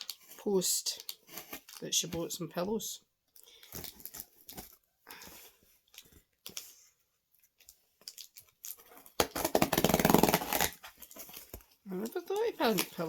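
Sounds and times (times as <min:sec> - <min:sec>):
plastic packaging tearing and crinkling: 0:01.0 - 0:01.9, 0:03.5 - 0:04.9, 0:07.6 - 0:13.0.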